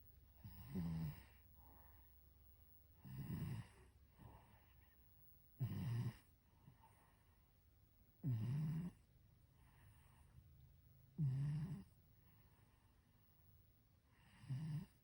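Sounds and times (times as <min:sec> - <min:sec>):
faint breaths: 0:00.0 - 0:15.0
cat snoring: 0:00.4 - 0:01.4, 0:03.0 - 0:04.7, 0:05.6 - 0:06.3, 0:08.2 - 0:09.0, 0:11.2 - 0:12.0, 0:14.1 - 0:15.0.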